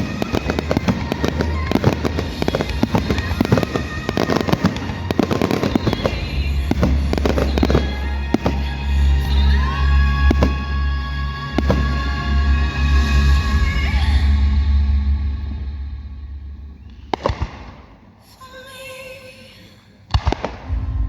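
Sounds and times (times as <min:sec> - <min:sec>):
fireworks bangs and crackles: 0:00.0 - 0:14.0, 0:16.5 - 0:18.2, 0:20.1 - 0:21.0.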